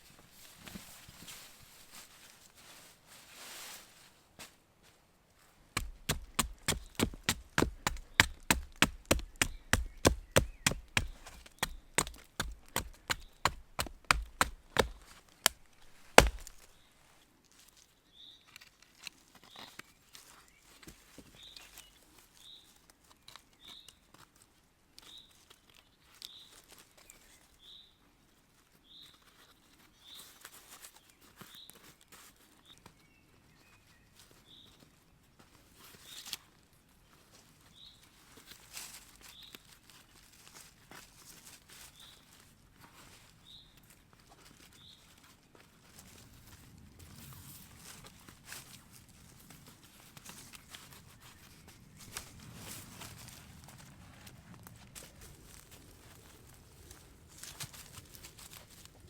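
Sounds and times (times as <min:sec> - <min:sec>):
mallet knocking on wood: 0:05.8 - 0:15.0, 0:15.8 - 0:16.6.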